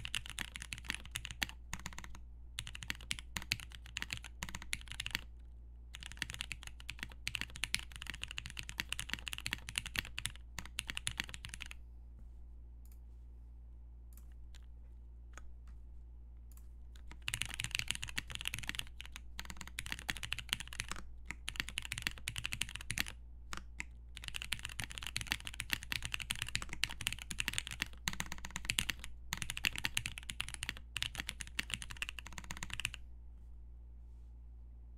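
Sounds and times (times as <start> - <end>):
typing on mechanical keyboard: 0.0 - 5.3, 5.9 - 11.8, 17.0 - 33.0
steady low hum: 0.0 - 34.9.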